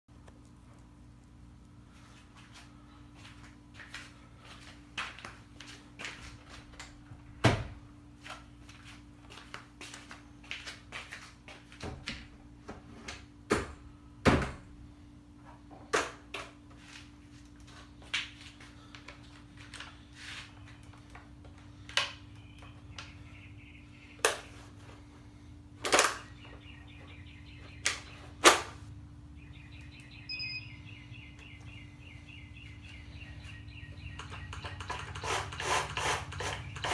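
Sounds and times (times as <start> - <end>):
steady low hum: 0.1 - 36.9
birds chirping: 17.8 - 36.9.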